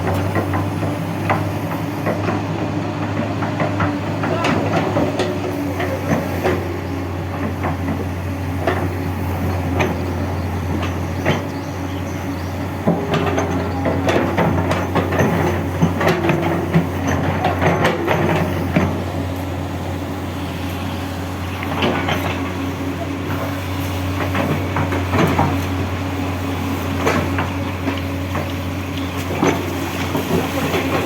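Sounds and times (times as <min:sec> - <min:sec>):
excavator diesel engine running: 0:00.0 - 0:31.0
sharp knocks and clanks: 0:12.8 - 0:19.2, 0:21.5 - 0:22.8.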